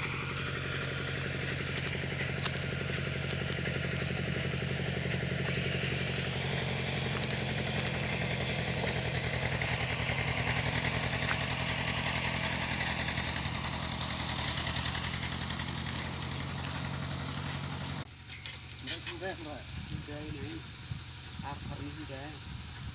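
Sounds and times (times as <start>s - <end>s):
sawmill engine drone: 0.0s - 22.9s
saw blade cutting log: 5.0s - 17.9s.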